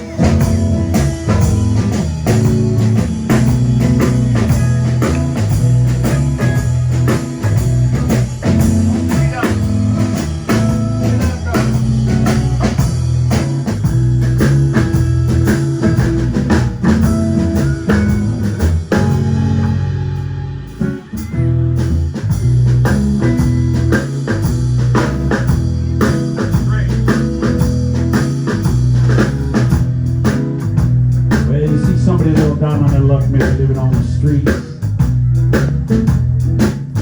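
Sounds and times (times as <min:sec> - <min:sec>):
blues band playing: 0:00.0 - 0:37.0.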